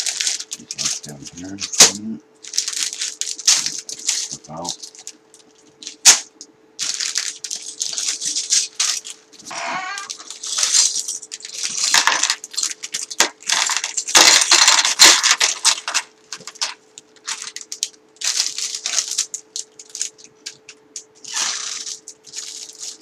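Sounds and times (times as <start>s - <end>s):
plastic bags crinkling: 0.0s - 23.0s
plastic bricks rattling: 6.8s - 23.0s.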